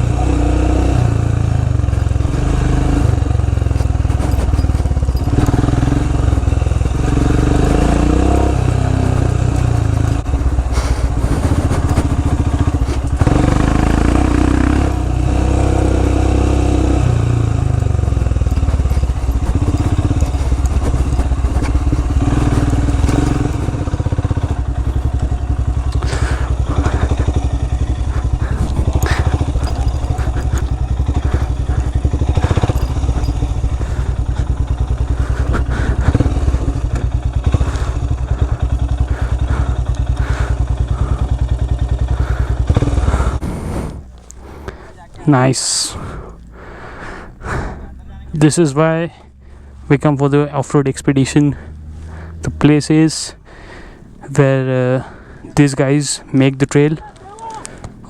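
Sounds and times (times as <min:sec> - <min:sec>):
motorcycle engine revving: 0:00.0 - 0:58.0
sharp knocks and clatters: 0:01.0 - 0:43.4.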